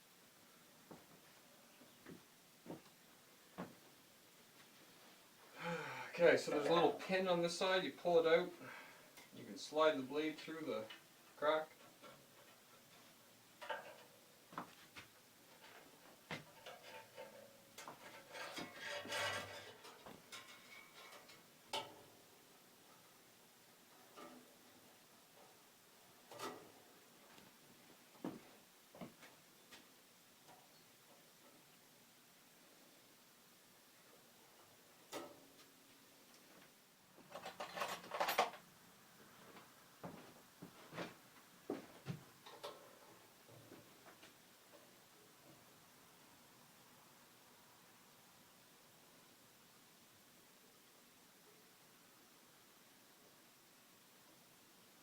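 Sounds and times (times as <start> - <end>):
metallic clicks and rattles: 37.3 - 38.7.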